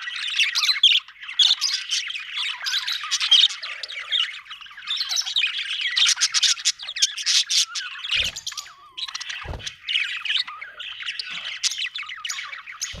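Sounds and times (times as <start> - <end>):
budgerigar chirping: 0.0 - 13.0
low thumps: 9.4 - 9.8.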